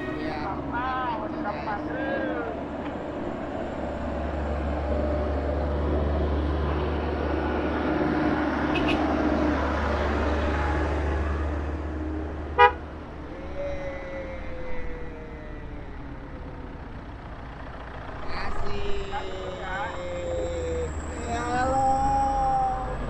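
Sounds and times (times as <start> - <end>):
car horn toot: 0.0 - 0.4, 8.7 - 9.1, 12.6 - 12.8
vehicles passing: 0.0 - 23.0.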